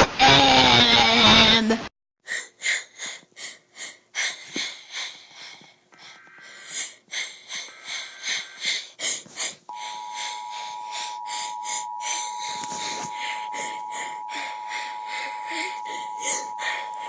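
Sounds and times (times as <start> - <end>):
two-tone attention signal: 9.7 - 17.0.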